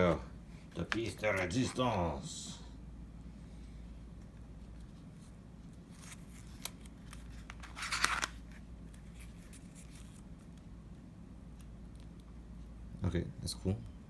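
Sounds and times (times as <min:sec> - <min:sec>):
packaging rustling: 0:05.8 - 0:10.6.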